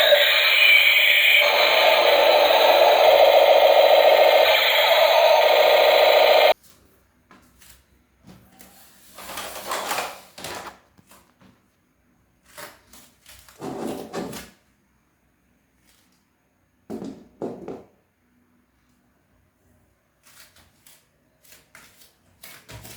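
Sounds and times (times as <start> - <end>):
loud sound cutting off: 0.0 - 6.6.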